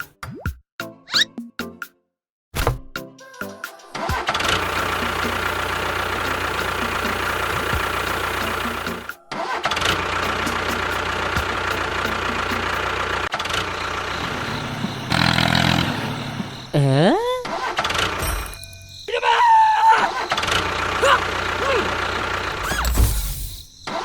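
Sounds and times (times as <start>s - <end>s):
small motor humming: 4.5s - 9.1s, 13.6s - 16.8s.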